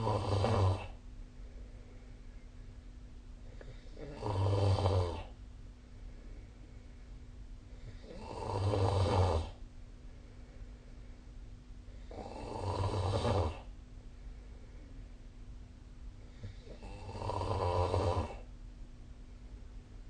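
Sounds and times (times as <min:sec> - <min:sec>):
person snoring: 0:00.0 - 0:01.0, 0:03.5 - 0:05.4, 0:07.8 - 0:09.6, 0:12.0 - 0:13.7, 0:16.3 - 0:18.5.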